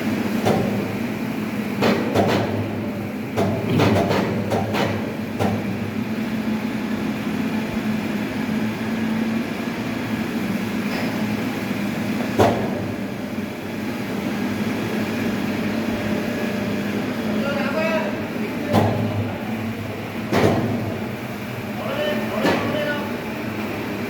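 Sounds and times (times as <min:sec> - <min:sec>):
machinery knocks: 0:03.4 - 0:05.7, 0:20.3 - 0:20.9
sawmill machinery humming: 0:05.1 - 0:24.0.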